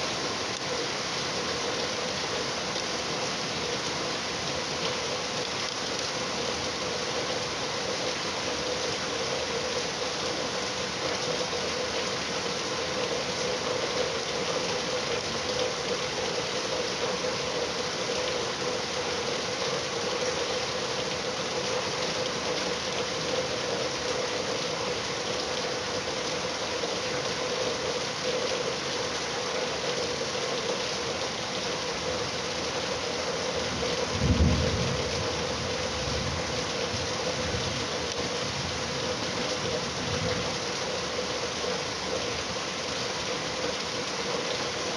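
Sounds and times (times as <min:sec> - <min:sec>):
steady rainfall: 0:00.0 - 0:44.9.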